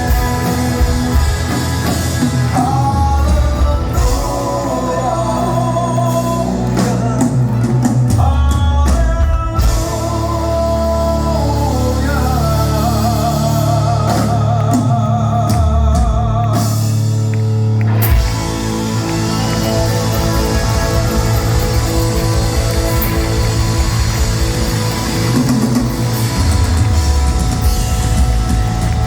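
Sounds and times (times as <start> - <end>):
person singing: 0.0 - 17.2
live rock band playing: 0.0 - 29.0
drum strokes: 18.0 - 29.0.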